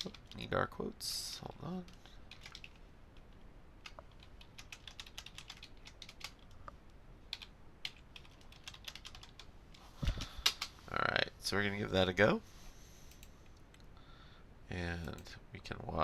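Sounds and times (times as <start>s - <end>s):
keyboard typing: 2.3s - 6.6s, 7.3s - 9.5s.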